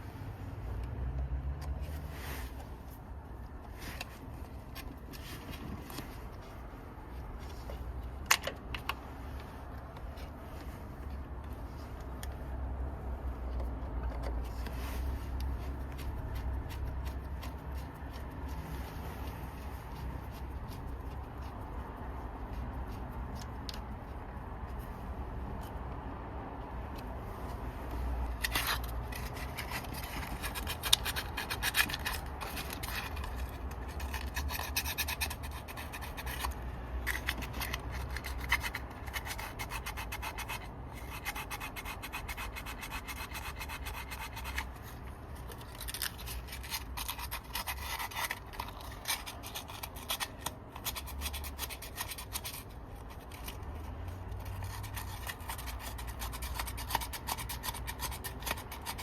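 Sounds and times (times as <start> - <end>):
rubbing and scratching: 1.7 - 59.0.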